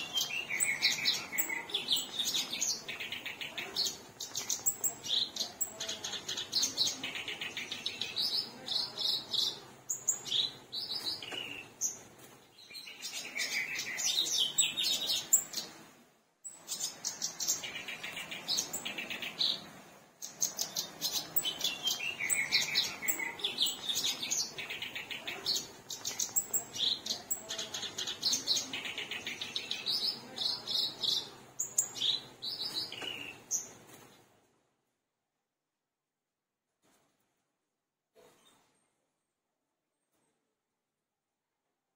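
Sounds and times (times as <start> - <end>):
reed warbler singing: 0.0 - 15.8, 16.4 - 33.8.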